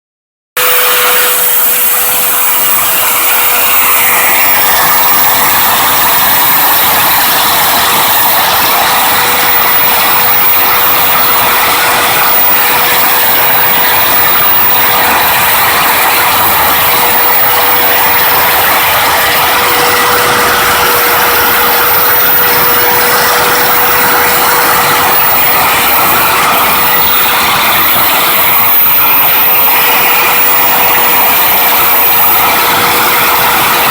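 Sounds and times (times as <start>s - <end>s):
milling cutter whining: 0.6s - 33.9s.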